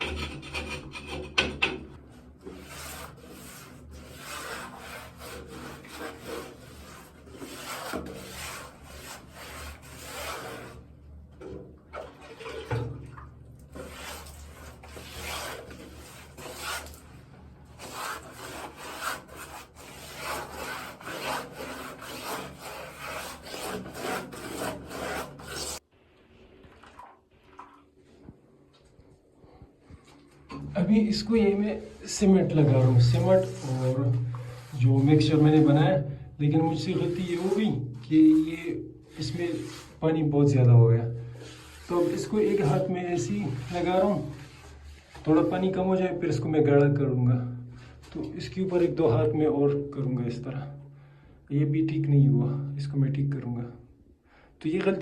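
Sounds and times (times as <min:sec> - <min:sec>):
cement mix scraping by hand: 0:02.4 - 0:13.0, 0:13.6 - 0:17.1, 0:17.7 - 0:25.8, 0:30.5 - 0:40.0, 0:41.3 - 0:45.8.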